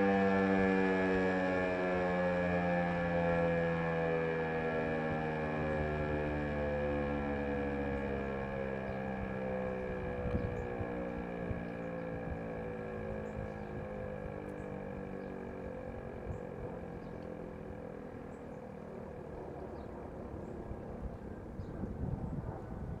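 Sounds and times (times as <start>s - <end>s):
warning siren winding down: 0.0s - 21.6s
wind on microphone: 9.1s - 15.1s, 20.0s - 23.0s.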